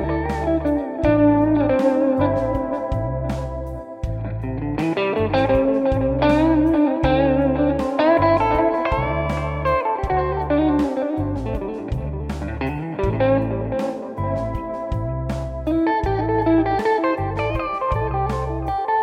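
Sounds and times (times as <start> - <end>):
backing track with bass and drums: 0.0 - 19.0
electric guitar single-note lines: 0.0 - 19.0.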